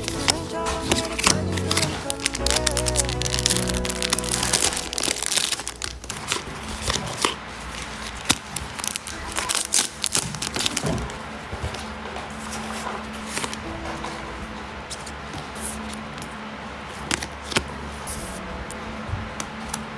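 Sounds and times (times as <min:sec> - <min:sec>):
music: 0:00.0 - 0:05.9, 0:09.2 - 0:11.0, 0:13.4 - 0:15.2, 0:18.2 - 0:19.9
wrapper crinkling: 0:00.0 - 0:14.0.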